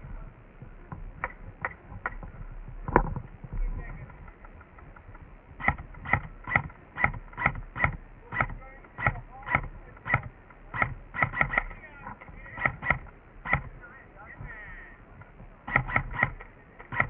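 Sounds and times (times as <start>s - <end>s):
airsoft rifle shots: 5.6s - 17.0s.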